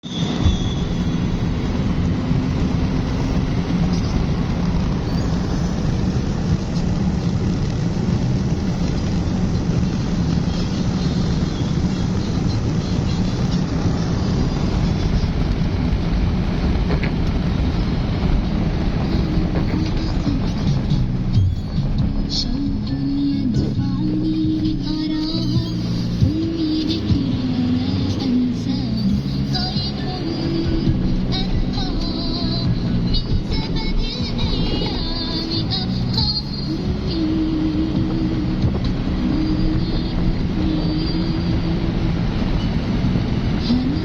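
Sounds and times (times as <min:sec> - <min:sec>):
low rumbling noise: 0:00.0 - 0:44.0.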